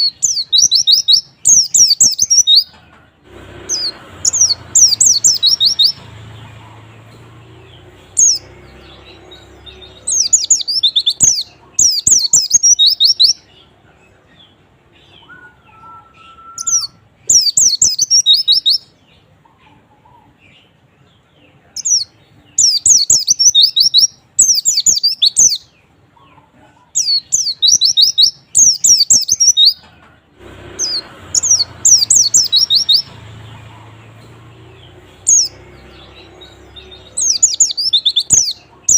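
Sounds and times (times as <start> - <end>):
high twittering bird song: 0.0 - 2.8, 3.5 - 30.0, 30.7 - 38.9.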